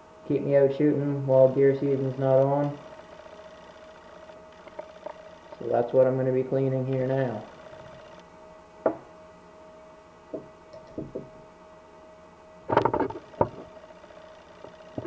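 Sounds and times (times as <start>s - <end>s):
faint camera whine: 0.3s - 9.2s, 12.6s - 15.0s.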